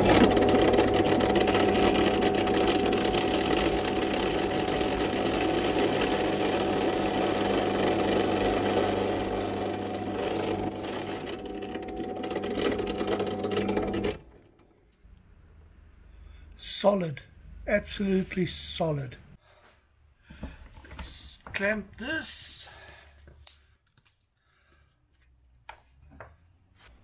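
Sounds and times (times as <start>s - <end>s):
electric drill boring into wood: 0.0s - 14.0s.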